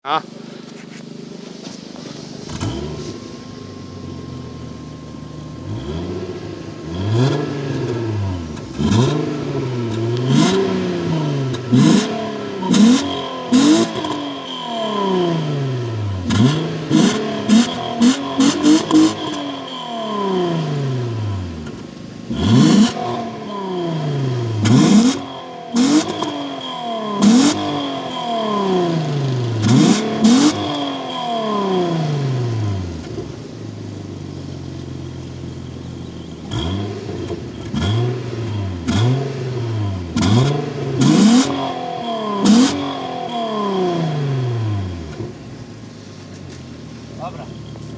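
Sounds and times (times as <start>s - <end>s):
exhaust cracks: 0.0s - 4.0s, 32.8s - 47.9s
car engine revving: 0.0s - 47.9s.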